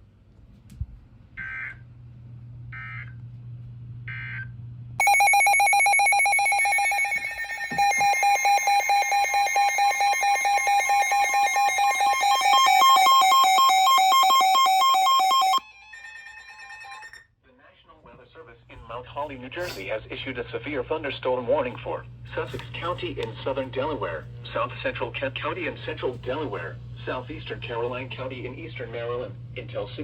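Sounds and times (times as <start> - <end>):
steady alert tone: 5.0 - 15.6
digital data bursts: 5.8 - 15.6.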